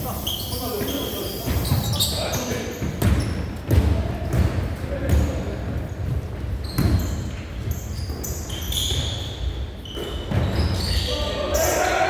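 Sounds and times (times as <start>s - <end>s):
shoe squeaks: 0.0s - 3.6s, 6.6s - 11.9s
basketball bouncing on gym floor: 0.6s - 10.9s.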